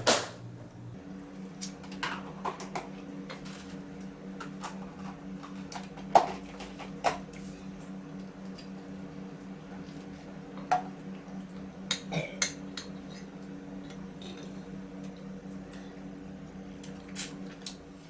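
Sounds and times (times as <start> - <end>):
steady low hum: 0.0 - 1.2.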